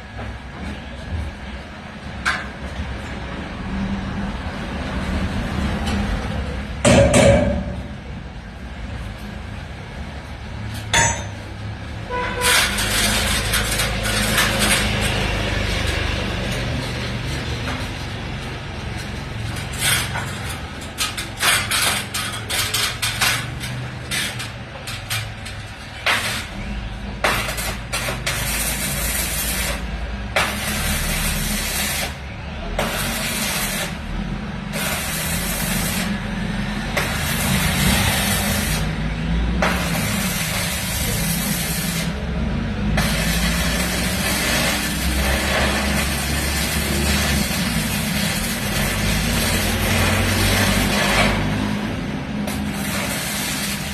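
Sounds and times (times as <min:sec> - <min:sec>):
electric arc welding crackle: 0:12.0 - 0:53.9.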